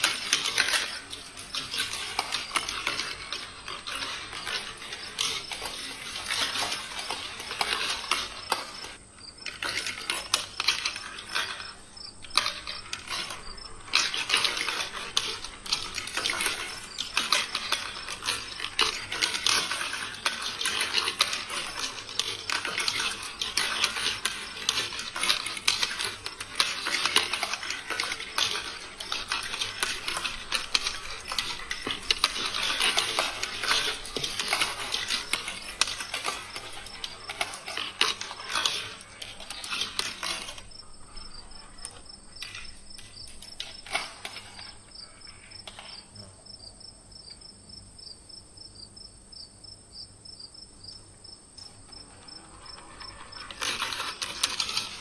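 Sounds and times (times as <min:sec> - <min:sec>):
marbles rattling on plastic tracks: 0:00.0 - 0:46.3, 0:51.0 - 0:55.0.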